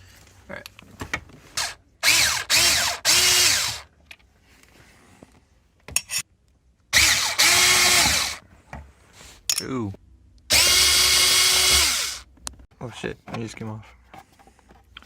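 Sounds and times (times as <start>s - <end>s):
power drill whining: 1.6s - 3.9s, 7.0s - 8.4s, 10.5s - 12.3s.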